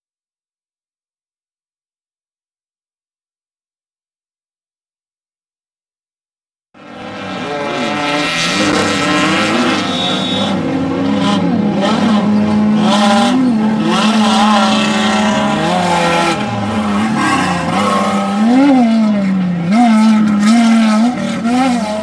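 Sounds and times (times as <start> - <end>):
race vehicle engines revving: 6.8 - 22.0.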